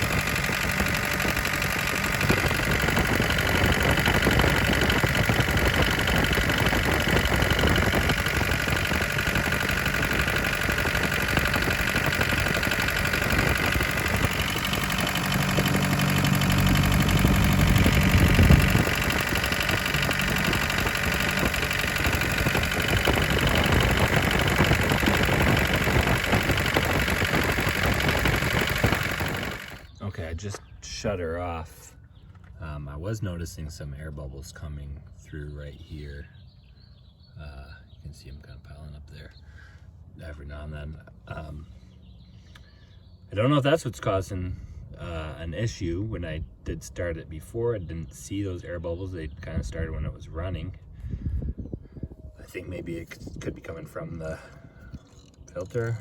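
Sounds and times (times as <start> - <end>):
diesel engine idling: 0.0 - 29.9.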